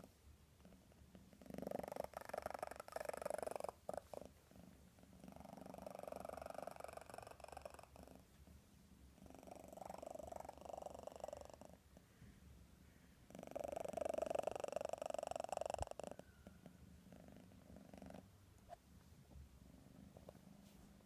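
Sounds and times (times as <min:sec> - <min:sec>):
cat purring loudly: 0:00.0 - 0:08.3, 0:09.2 - 0:11.9, 0:13.3 - 0:16.3, 0:17.0 - 0:18.3.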